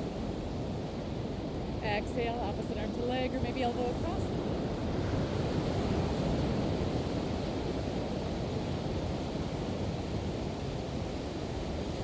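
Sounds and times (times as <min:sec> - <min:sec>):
waves breaking on beach: 0:03.5 - 0:12.0.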